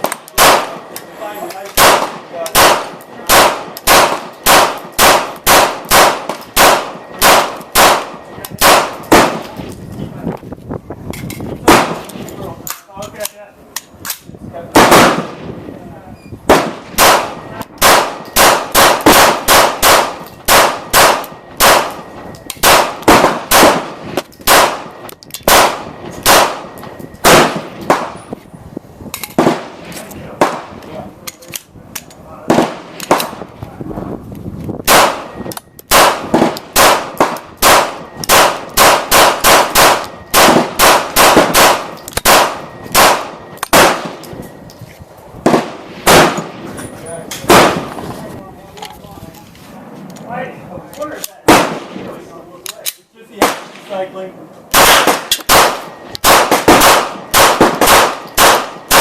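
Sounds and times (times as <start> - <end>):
pistol shots: 0.0 - 9.6, 11.6 - 12.8, 14.0 - 15.5, 16.5 - 28.3, 29.3 - 30.8, 32.5 - 33.5, 34.8 - 44.4, 45.4 - 46.7, 47.4 - 48.0, 51.4 - 54.1, 54.7 - 59.0.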